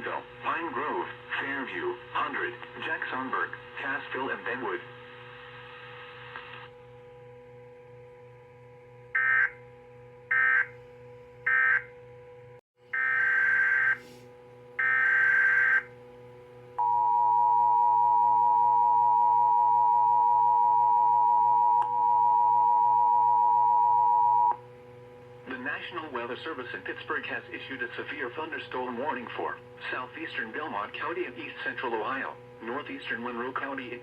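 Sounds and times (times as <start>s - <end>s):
faint steady hum: 0.0s - 34.0s
two-tone attention signal: 16.8s - 24.6s.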